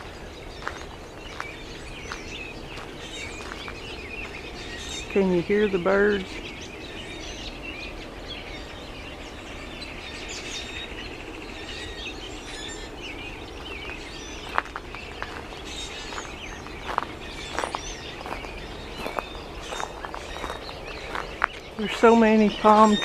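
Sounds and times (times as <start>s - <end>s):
footsteps crunching on shells: 0.0s - 4.4s, 13.6s - 22.0s
birds singing and chirping: 0.0s - 23.0s.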